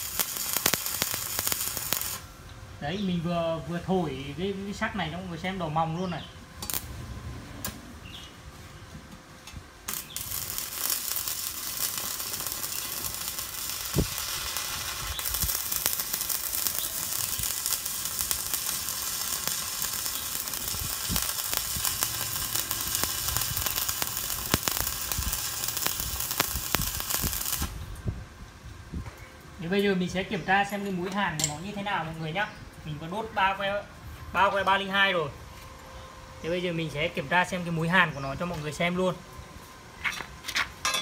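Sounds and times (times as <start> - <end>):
welding arc crackling sizzle: 0.0 - 2.4, 6.6 - 7.0, 9.4 - 28.1.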